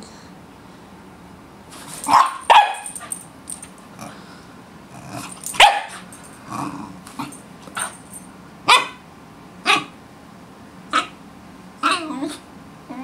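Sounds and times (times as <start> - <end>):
puppy barking and grumbling: 4.9 - 7.9, 9.6 - 10.0, 10.9 - 11.2, 11.8 - 13.0.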